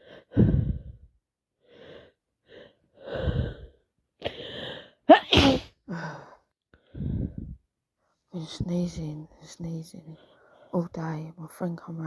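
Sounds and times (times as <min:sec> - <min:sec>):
woman breathing heavily: 0:00.0 - 0:05.1, 0:05.9 - 0:07.7
woman sneezing: 0:05.1 - 0:05.8.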